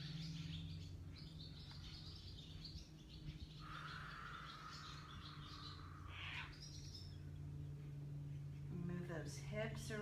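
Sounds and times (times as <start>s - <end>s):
birds chirping faintly: 0.0s - 10.0s
low steady hum: 0.0s - 10.0s.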